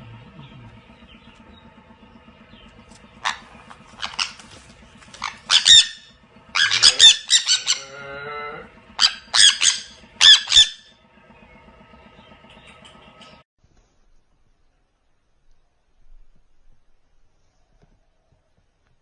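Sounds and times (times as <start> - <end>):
parrot squawking: 3.2 - 8.0, 9.0 - 10.9.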